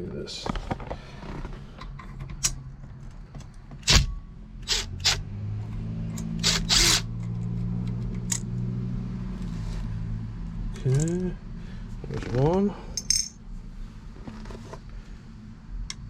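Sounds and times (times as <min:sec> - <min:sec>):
impact driver hammering: 0:03.8 - 0:05.2, 0:06.3 - 0:07.1
steady low hum: 0:08.1 - 0:16.0.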